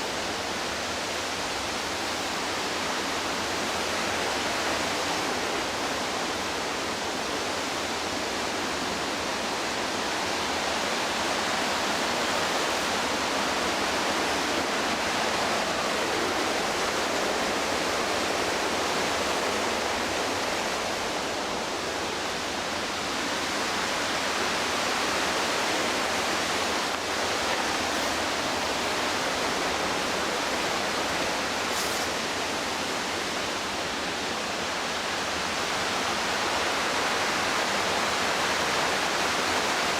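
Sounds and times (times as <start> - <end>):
whitewater rushing: 0.0 - 39.9.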